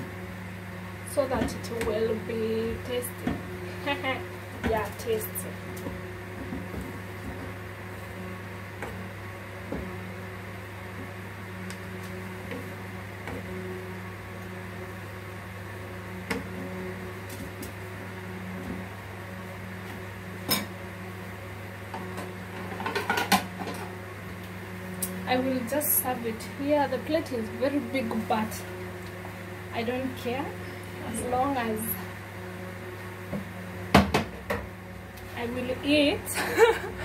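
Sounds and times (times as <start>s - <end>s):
low electrical hum: 0.0s - 37.0s.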